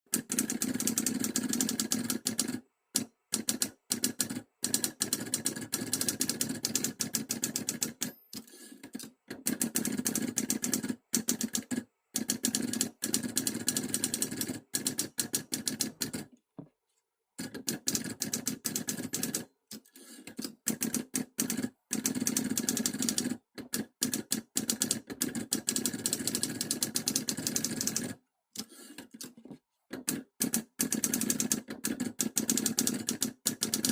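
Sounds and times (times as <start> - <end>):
typewriter clacking: 30.0 - 33.9.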